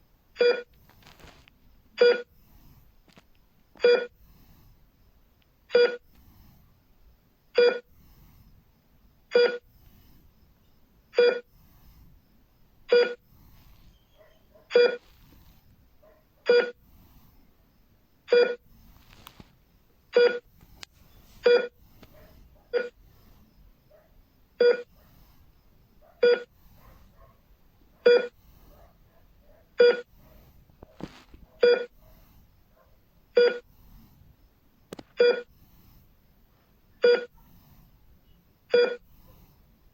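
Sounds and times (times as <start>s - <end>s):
heart rate monitor beeping: 0.4s - 0.8s, 2.0s - 2.5s, 3.8s - 4.5s, 5.7s - 6.4s, 7.5s - 8.0s, 9.3s - 9.9s, 11.1s - 11.8s, 12.9s - 15.6s, 16.4s - 17.0s, 18.2s - 19.4s, 20.1s - 23.4s, 24.6s - 25.0s, 26.2s - 26.5s, 28.0s - 28.4s, 29.8s - 30.1s, 31.6s - 32.0s, 33.3s - 34.1s, 35.1s - 35.8s, 37.0s - 37.4s, 38.2s - 39.4s.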